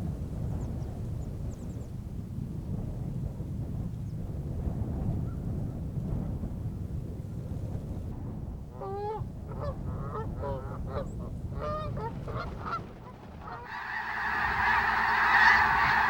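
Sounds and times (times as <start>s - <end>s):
chorus of many geese calling: 11.7s - 16.0s
geese honking: 13.4s - 16.0s.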